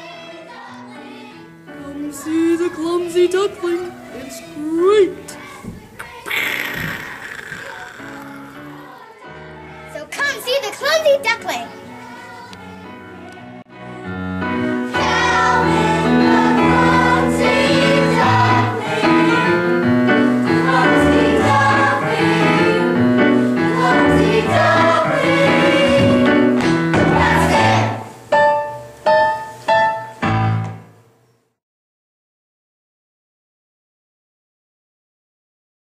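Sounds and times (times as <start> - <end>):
group of voices singing: 0.0 - 10.1, 11.7 - 28.2
instrumental accompaniment: 11.4 - 31.2.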